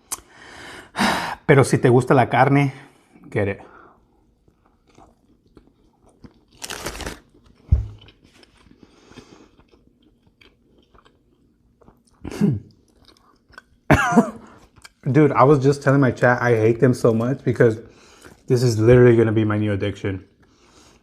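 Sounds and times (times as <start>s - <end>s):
wet chewing and smacking: 4.2s - 13.9s, 14.5s - 15.1s.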